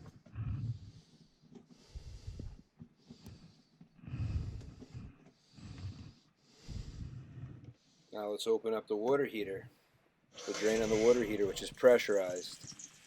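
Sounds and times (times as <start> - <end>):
man breathing heavily: 0.0 - 8.2.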